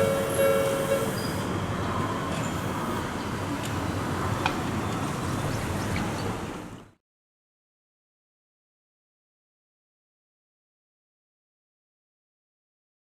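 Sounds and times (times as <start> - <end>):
level crossing alarm tones: 0.0 - 1.4
train rumble: 0.0 - 5.5.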